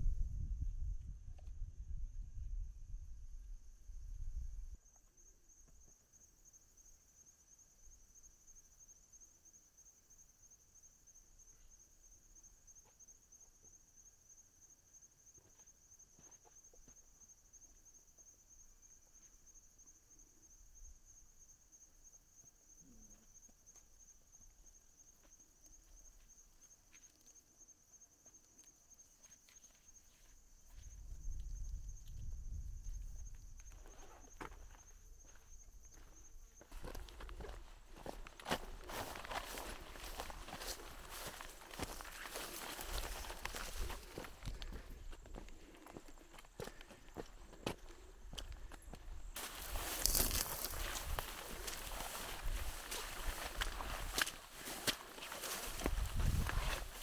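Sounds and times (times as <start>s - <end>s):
high-pitched insect chirring: 49.4s - 54.3s.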